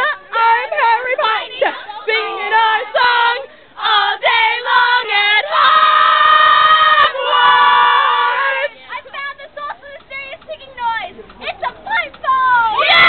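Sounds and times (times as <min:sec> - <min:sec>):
long held cry: 0:00.0 - 0:08.8, 0:12.5 - 0:13.0.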